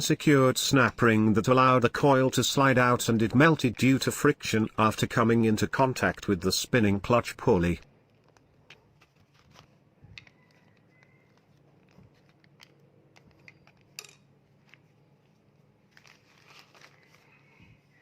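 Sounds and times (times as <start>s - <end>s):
hand tools and metal parts clicking: 10.1s - 14.8s.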